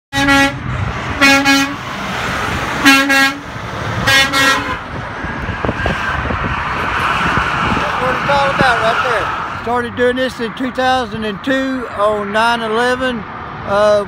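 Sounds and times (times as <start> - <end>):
vehicle horns honking: 0.1 - 1.9, 2.8 - 5.0
freeway traffic rushing: 0.1 - 14.0.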